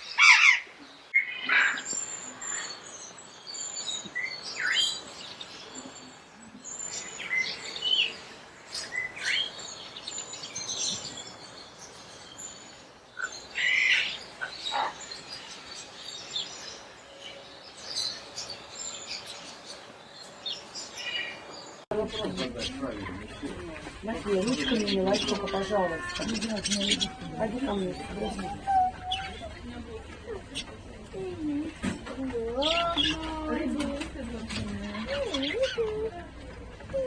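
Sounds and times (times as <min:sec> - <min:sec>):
parrots chirping and squawking: 0:00.0 - 0:02.8, 0:13.2 - 0:15.5, 0:22.0 - 0:30.8, 0:34.4 - 0:36.2.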